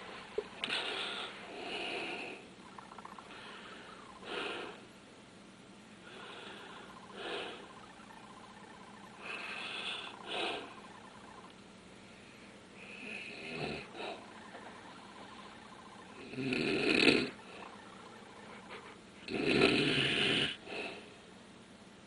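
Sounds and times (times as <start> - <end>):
person snoring: 12.8 - 14.3, 16.2 - 17.4, 19.3 - 20.9.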